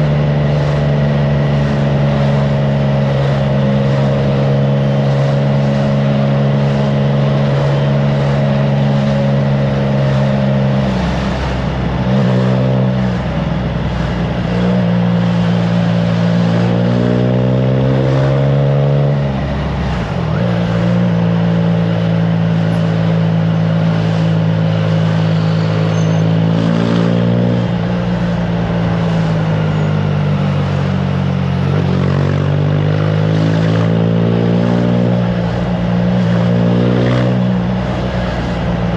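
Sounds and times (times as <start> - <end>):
wind rushing over microphone: 34.6 - 38.9.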